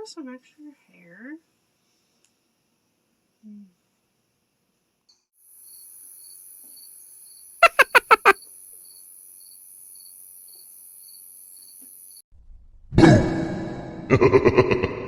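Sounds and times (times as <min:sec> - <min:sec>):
crickets chirping: 0:05.4 - 0:12.2
loud pitched animal calls: 0:07.6 - 0:08.4.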